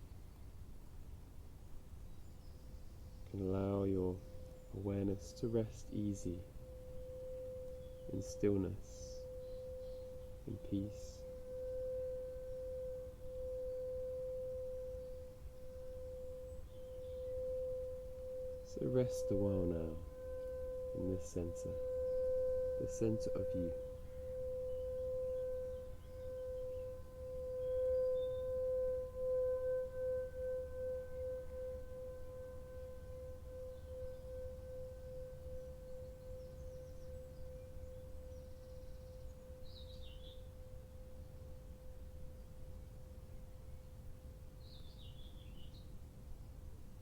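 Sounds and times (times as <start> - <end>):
steady mid-pitched tone: 3.4 - 27.6.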